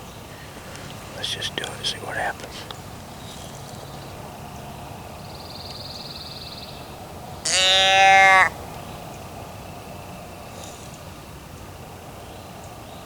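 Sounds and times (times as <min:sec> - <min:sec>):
nasal hunting call note: 0:07.4 - 0:08.5.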